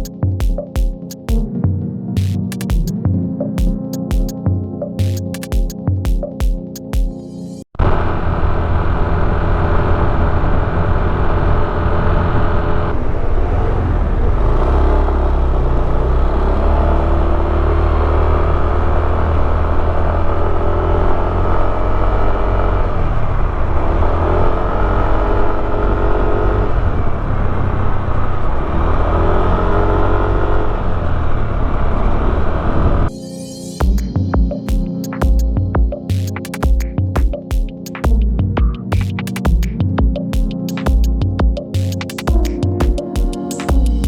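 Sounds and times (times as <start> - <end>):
scooter engine revving: 7.8 - 33.1.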